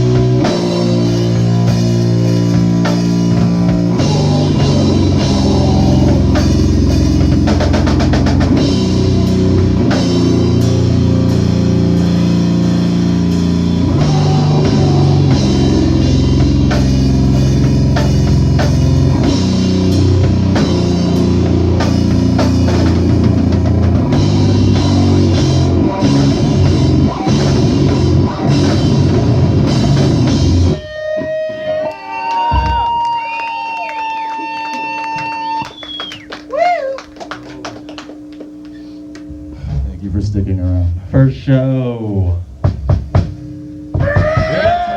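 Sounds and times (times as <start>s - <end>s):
live rock band playing: 0.0s - 36.5s, 42.6s - 44.9s
ringing guitar tones: 0.0s - 36.5s, 42.6s - 44.9s.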